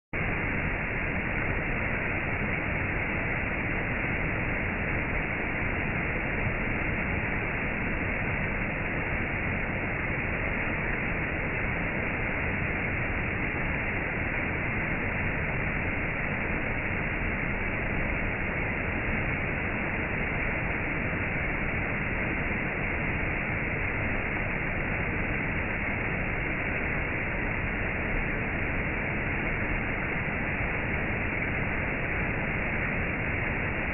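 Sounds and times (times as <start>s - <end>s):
rushing water: 0.2s - 33.9s.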